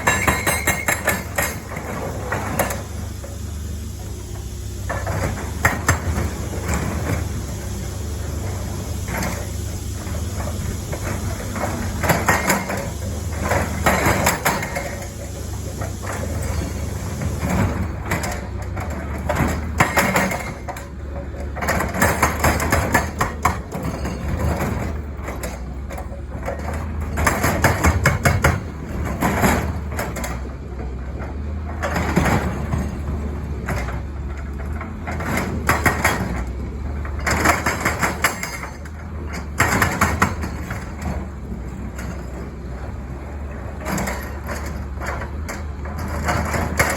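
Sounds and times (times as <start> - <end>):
hydraulic breaker hammering: 0.0 - 3.3, 10.5 - 21.0
diesel engine running: 0.0 - 46.9.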